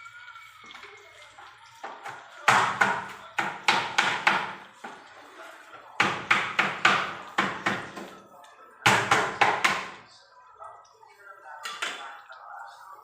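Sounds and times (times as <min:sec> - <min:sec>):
knife chopping on cutting board: 0:06.0 - 0:08.1.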